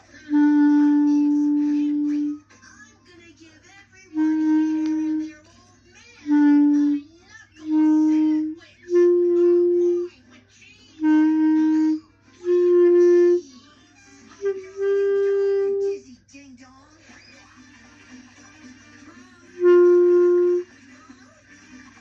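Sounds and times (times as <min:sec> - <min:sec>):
clarinet held notes: 0:00.0 - 0:02.4, 0:04.1 - 0:05.3, 0:06.3 - 0:07.0, 0:07.6 - 0:10.1, 0:11.0 - 0:13.5, 0:14.4 - 0:16.0, 0:19.6 - 0:20.7.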